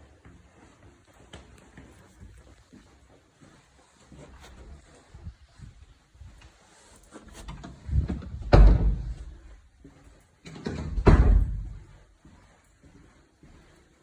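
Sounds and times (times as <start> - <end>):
door shutting with heavy thump: 7.5 - 9.4, 10.6 - 11.9.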